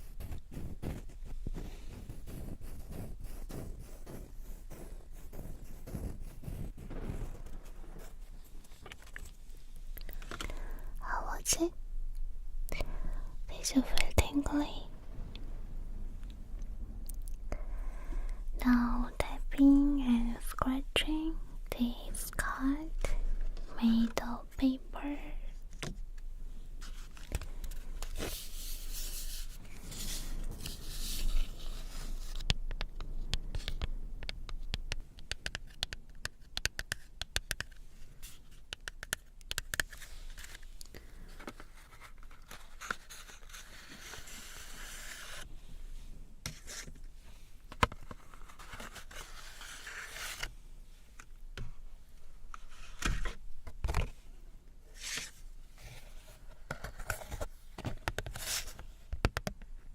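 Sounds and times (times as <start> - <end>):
scratching on paper card: 0.0 - 9.2, 28.0 - 32.8, 35.2 - 45.4, 47.8 - 50.5
tapping on paper card: 32.4 - 37.8.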